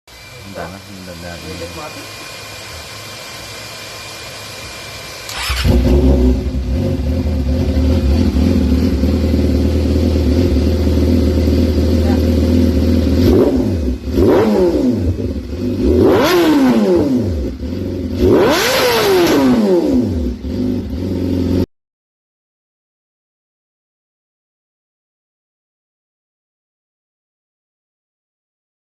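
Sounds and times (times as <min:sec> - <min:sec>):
motorcycle engine idling and revving: 0:00.1 - 0:21.7.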